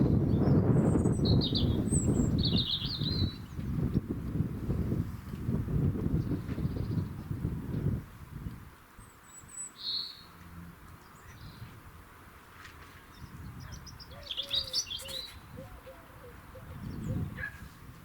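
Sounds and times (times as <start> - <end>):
small birds chirping: 0.1 - 4.0, 9.0 - 11.8, 13.0 - 17.8.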